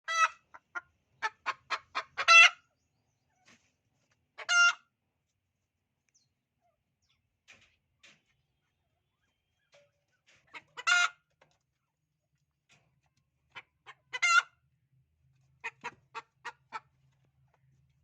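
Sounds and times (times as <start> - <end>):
hen clucking and squawking: 0.0 - 2.6, 4.4 - 4.9, 9.6 - 11.3, 13.5 - 14.6, 15.6 - 17.0.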